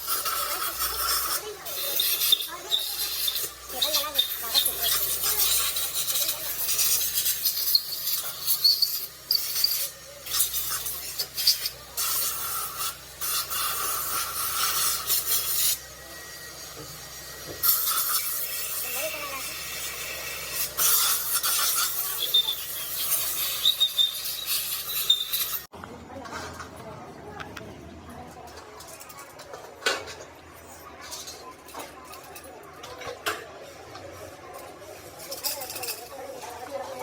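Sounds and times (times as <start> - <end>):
hand rubbing on metal: 0.0 - 15.8.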